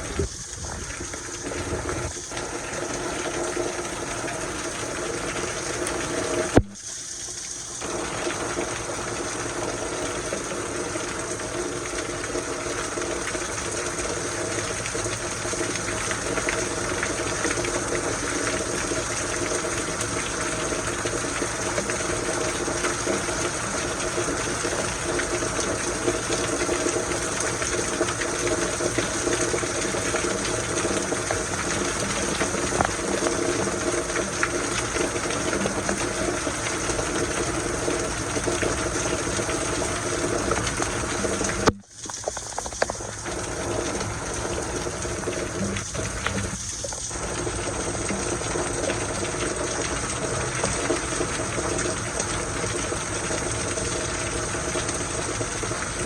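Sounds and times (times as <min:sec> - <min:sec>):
heavy rain: 0:00.0 - 0:06.6, 0:07.2 - 0:56.0
water pouring and gushing: 0:00.0 - 0:56.0.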